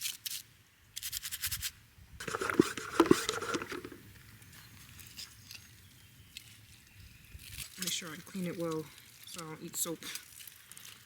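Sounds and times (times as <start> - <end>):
scraping on a pan: 2.2 - 4.0.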